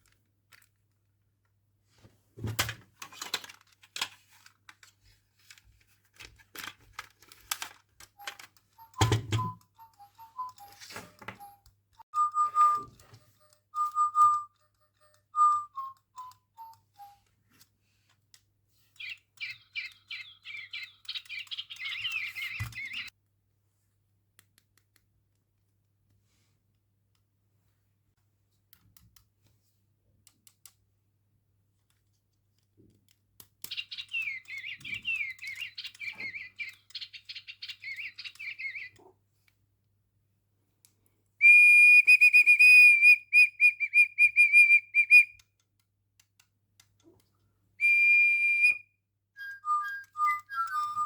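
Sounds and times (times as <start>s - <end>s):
toy bird warbling tweets: 19.0s - 23.1s, 33.7s - 39.0s, 49.4s - 51.0s
pulsing electronic whistle: 47.8s - 48.8s.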